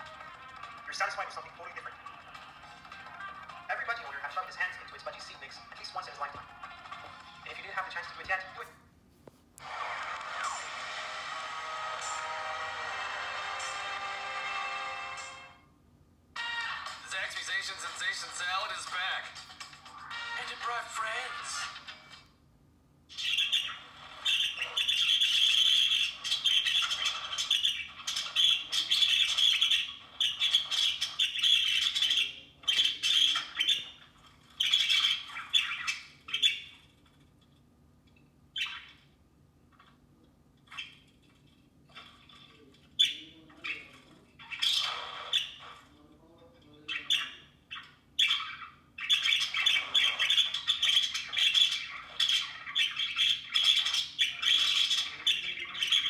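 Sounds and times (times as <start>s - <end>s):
budgies chattering and squawking: 0.0s - 8.7s, 16.9s - 22.0s, 23.1s - 36.9s, 38.6s - 39.1s, 42.9s - 46.0s, 46.8s - 56.0s.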